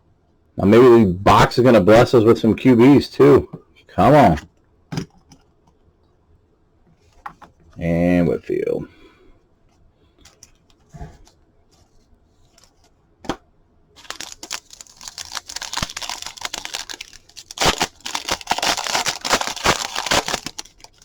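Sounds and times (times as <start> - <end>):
card pack wrapper tearing: 14.0 - 21.0.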